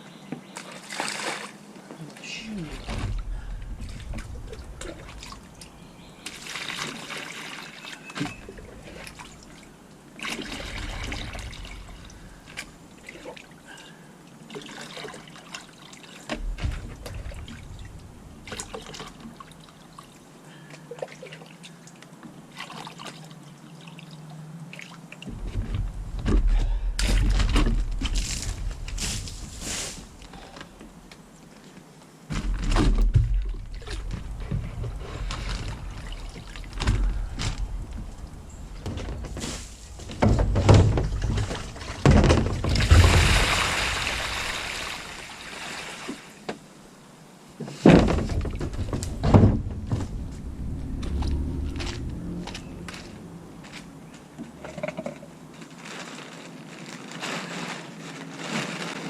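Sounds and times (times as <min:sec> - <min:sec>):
water pouring and trickling: 0:02.2 - 0:13.8, 0:20.9 - 0:30.1, 0:33.0 - 0:46.4, 0:48.3 - 0:53.8
low rumble: 0:02.7 - 0:05.9, 0:32.9 - 0:42.0, 0:48.5 - 0:53.9.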